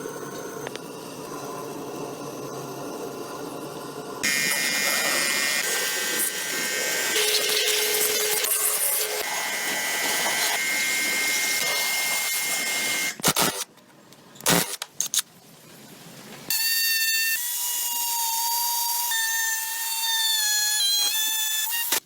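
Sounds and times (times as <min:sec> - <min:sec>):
high-pitched motor whine: 0:00.0 - 0:13.6
hissing power tool: 0:04.2 - 0:13.6.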